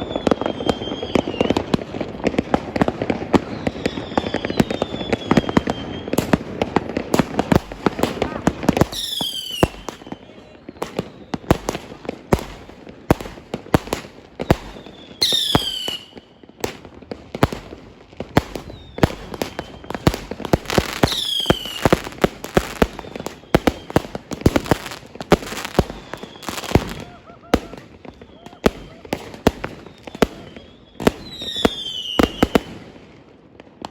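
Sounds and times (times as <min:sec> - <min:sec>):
falling firework whistle: 0:00.0 - 0:01.8, 0:03.2 - 0:07.0, 0:08.2 - 0:11.7, 0:14.3 - 0:16.9, 0:18.5 - 0:32.8
fireworks bangs and cracks: 0:00.0 - 0:33.9.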